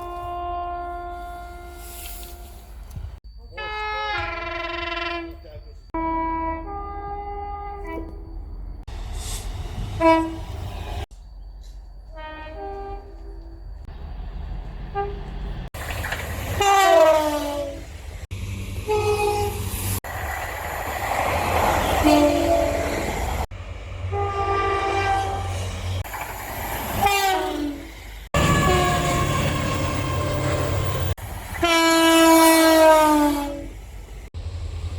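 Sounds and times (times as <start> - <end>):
train horns: 0.0 - 8.3, 10.0 - 10.6, 12.1 - 13.6, 14.9 - 15.3, 16.5 - 18.0, 18.8 - 19.6, 21.8 - 23.2, 24.1 - 25.7, 27.0 - 33.8
engine and rail rumble: 0.0 - 34.9.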